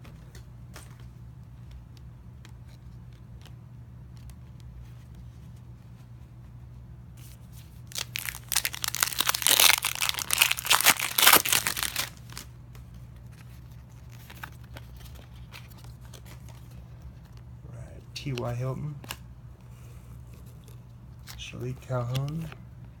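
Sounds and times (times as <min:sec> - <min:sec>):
foil wrapper tearing and crinkling: 0:07.9 - 0:12.5.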